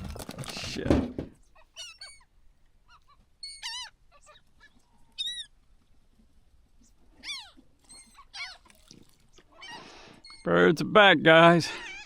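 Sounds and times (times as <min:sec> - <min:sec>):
wild birds calling: 0:01.4 - 0:05.6, 0:06.8 - 0:12.0.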